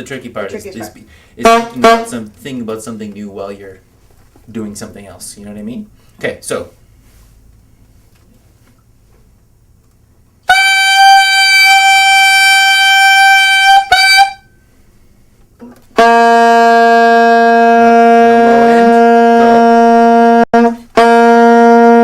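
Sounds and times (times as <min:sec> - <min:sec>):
saxophone long held tones: 0:10.4 - 0:14.6, 0:16.0 - 0:22.0.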